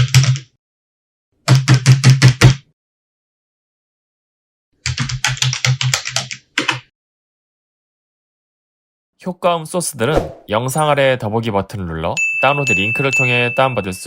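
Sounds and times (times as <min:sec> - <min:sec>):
computer keyboard typing: 0:00.0 - 0:00.4, 0:04.8 - 0:06.8.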